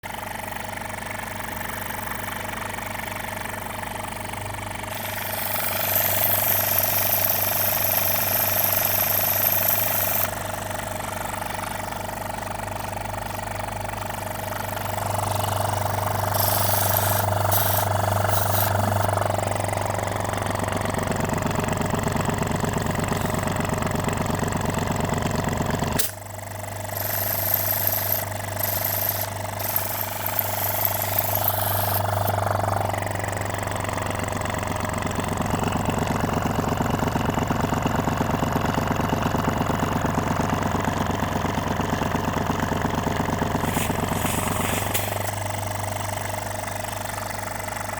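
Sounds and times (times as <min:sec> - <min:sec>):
compressor chugging hum: 0:00.0 - 0:47.9.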